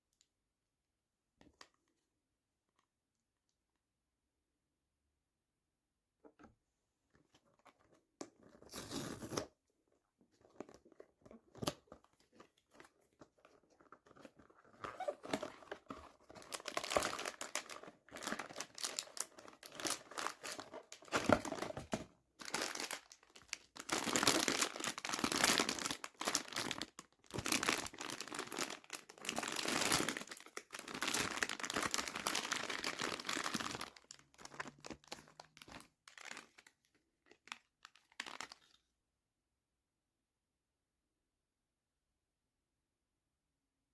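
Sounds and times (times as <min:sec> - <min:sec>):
packaging wrapper crinkling and tearing: 0:14.9 - 0:38.7.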